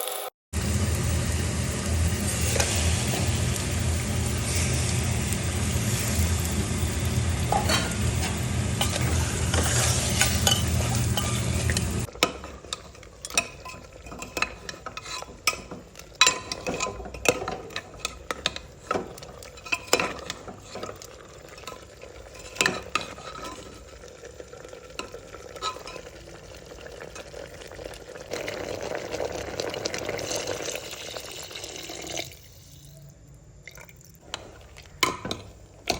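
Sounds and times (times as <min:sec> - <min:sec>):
meat sizzling in a pan: 0:00.0 - 0:12.1
utensil clinking and scraping pan: 0:07.5 - 0:23.9, 0:25.5 - 0:26.1.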